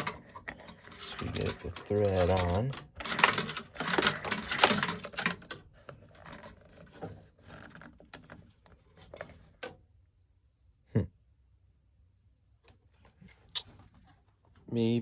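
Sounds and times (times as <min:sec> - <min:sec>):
handling noises: 0:00.0 - 0:09.8
tools and parts clicking: 0:00.0 - 0:09.8.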